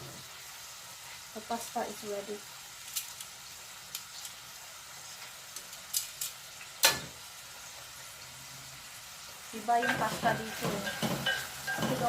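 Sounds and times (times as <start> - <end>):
faint steady hiss: 0.0 - 12.0
utensil clinking against pot: 9.8 - 12.0.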